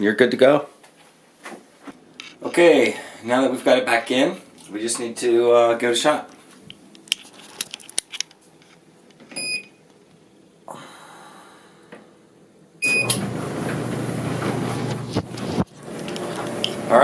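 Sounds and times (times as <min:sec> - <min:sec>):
control panel beeps: 0:09.4 - 0:09.8
dryer drum rumbling: 0:12.8 - 0:17.0.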